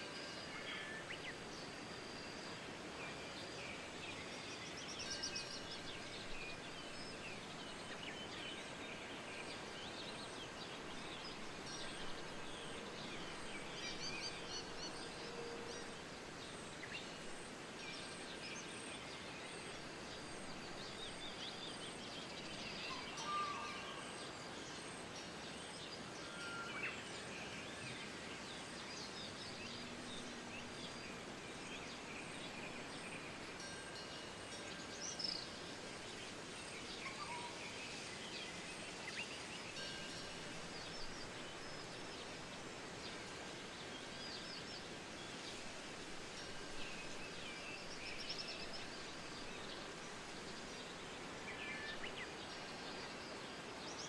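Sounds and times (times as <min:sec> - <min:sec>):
steady wind: 0:26.9 - 0:54.0.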